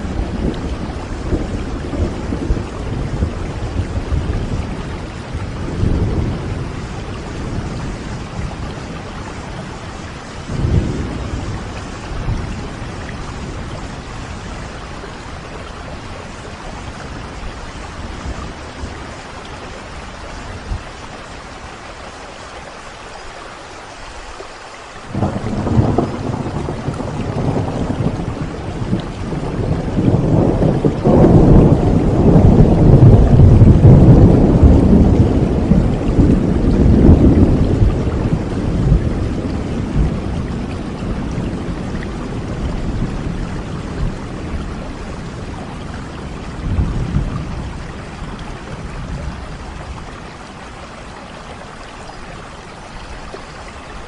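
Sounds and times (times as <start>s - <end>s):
rolling thunder: 0.0s - 20.8s, 25.1s - 50.5s
steady rain: 0.0s - 54.0s.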